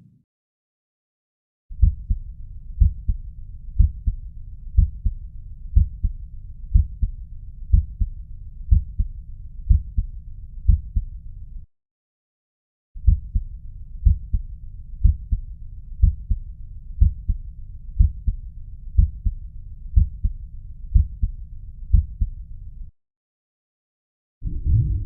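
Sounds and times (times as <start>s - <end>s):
heartbeat through stethoscope: 1.8s - 8.1s, 8.7s - 11.2s, 13.0s - 18.4s, 19.0s - 19.4s, 20.0s - 22.4s
low rushing noise: 24.4s - 25.0s.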